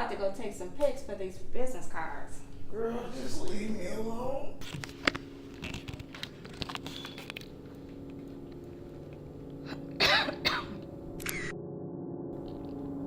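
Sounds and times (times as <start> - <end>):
woman coughing: 9.7 - 10.8.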